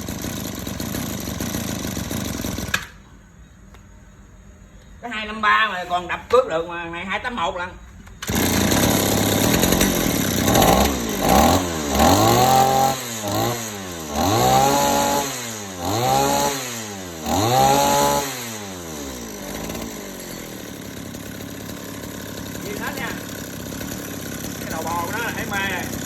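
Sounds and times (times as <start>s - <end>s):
small two-stroke engine revving: 0.0s - 3.0s, 8.2s - 26.0s.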